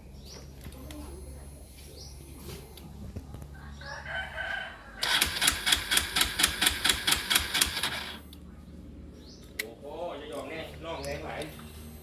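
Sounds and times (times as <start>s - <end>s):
motorcycle starter cranking: 5.0s - 8.2s.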